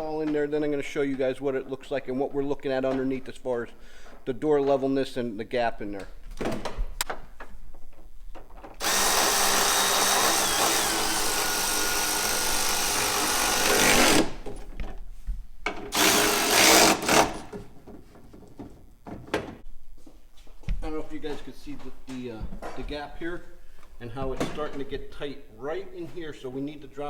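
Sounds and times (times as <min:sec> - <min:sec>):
power drill running: 0:08.8 - 0:14.5, 0:15.9 - 0:17.5.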